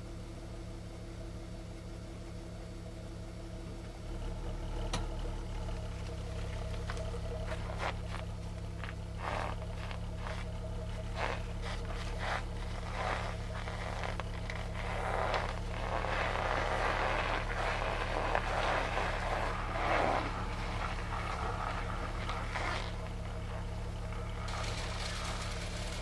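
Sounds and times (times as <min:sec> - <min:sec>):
car exhaust idling: 0:00.0 - 0:26.0
scratchy microphone noise: 0:09.1 - 0:26.0.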